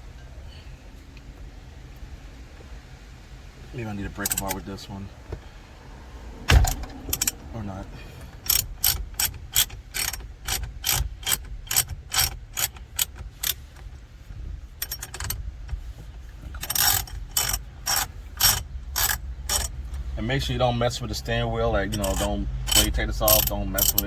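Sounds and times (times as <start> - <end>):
hand ratchet clicking: 6.7 - 7.4, 8.3 - 13.9, 14.8 - 15.8, 16.5 - 20.1, 21.8 - 24.0.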